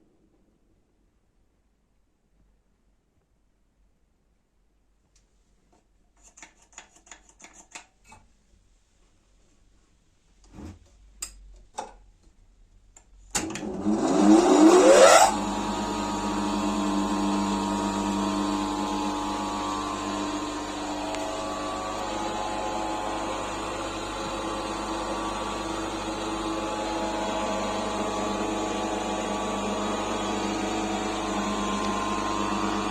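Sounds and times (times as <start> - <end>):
bench grinder motor whine: 13.6 - 32.9.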